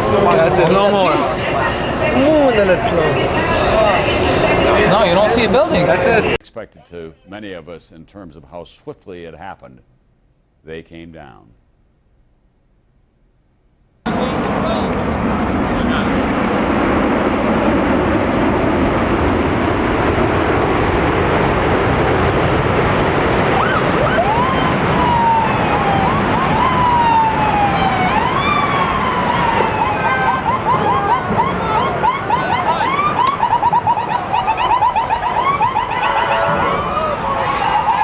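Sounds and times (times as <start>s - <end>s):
emergency vehicle sirens: 0.0s - 6.4s, 14.1s - 38.0s
steady wash of noise: 0.0s - 6.4s, 14.1s - 38.0s.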